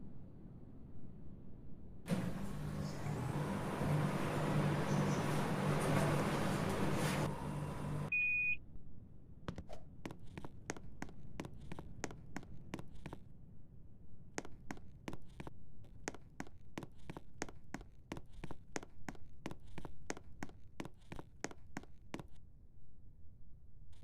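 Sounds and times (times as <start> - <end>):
air conditioner running: 2.1 - 8.5
short high beep: 8.1 - 8.6.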